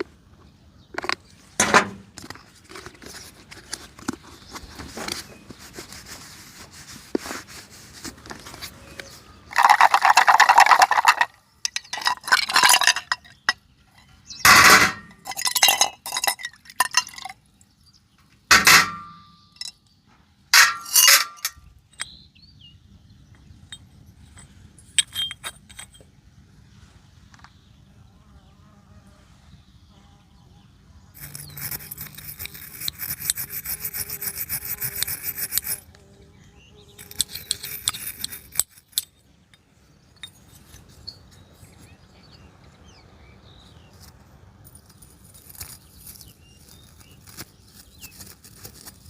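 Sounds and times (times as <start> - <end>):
metal parts and tools clinking: 9.5 - 17.4, 18.5 - 19.8, 20.6 - 22.2, 23.6 - 26.2, 31.2 - 35.8, 37.0 - 41.9.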